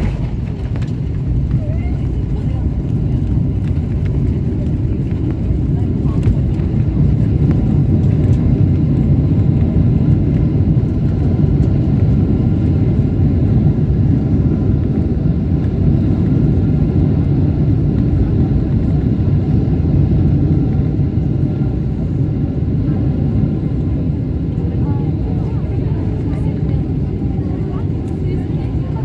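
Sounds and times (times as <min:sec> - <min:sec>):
aircraft cabin rumble: 0:00.0 - 0:29.0.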